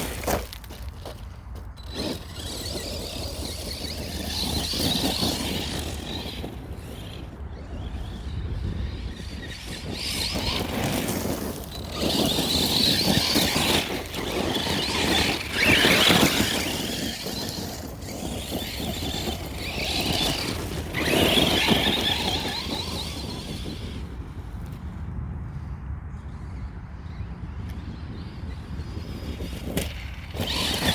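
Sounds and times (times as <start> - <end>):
tyres spraying gravel: 0.0 - 7.2, 9.0 - 23.6, 30.0 - 30.9
rc car electric motor whining: 0.0 - 24.9, 26.3 - 30.9.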